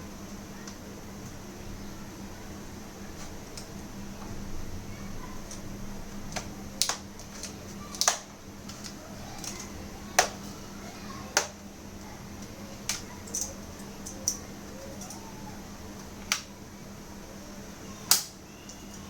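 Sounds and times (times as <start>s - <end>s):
plastic clips clicking and snapping: 6.3s - 10.4s, 18.1s - 18.8s.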